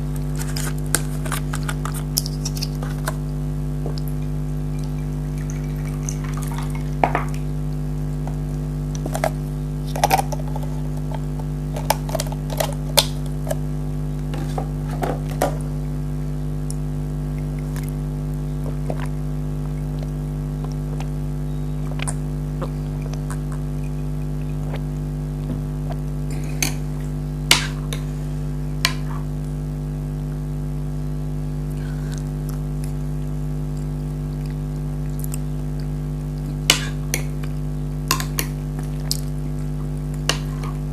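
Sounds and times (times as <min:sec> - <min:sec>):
steady low hum: 0:00.0 - 0:40.9
eating bites: 0:00.1 - 0:07.5, 0:08.2 - 0:13.6, 0:21.8 - 0:26.8.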